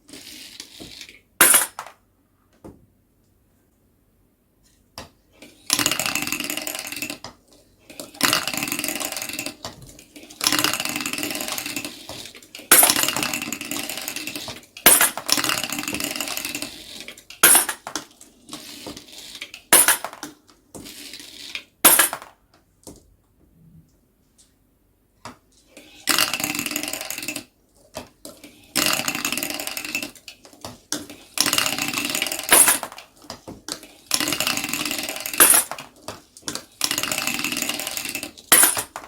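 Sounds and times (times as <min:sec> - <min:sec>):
marbles rolling on a track: 0:00.1 - 0:02.0, 0:05.7 - 0:07.2, 0:07.9 - 0:22.3, 0:25.8 - 0:27.5, 0:28.3 - 0:39.0.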